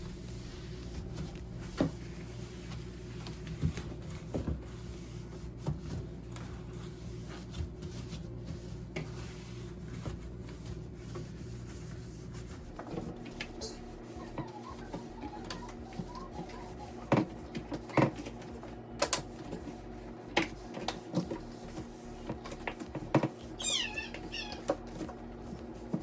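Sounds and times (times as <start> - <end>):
steady low hum: 0.0 - 26.0
light knocks and clicks of household items: 12.8 - 19.7, 20.3 - 26.0.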